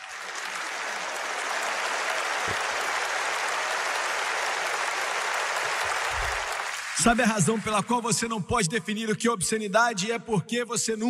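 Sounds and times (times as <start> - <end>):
crowd applauding: 0.0 - 8.3.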